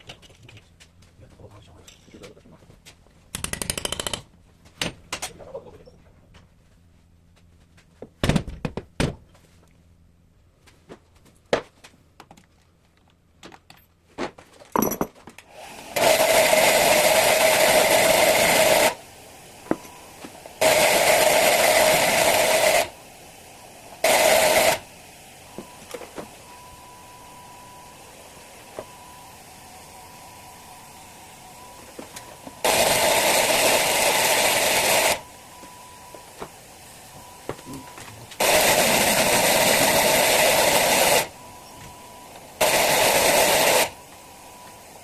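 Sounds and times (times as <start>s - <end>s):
tools clicking on metal parts: 3.3s - 4.3s
power tool running: 15.5s - 45.0s.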